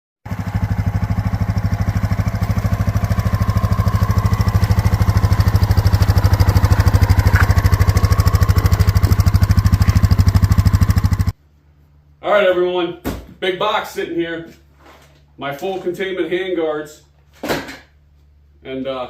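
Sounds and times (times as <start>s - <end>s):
motorcycle engine idling: 0.3s - 11.4s.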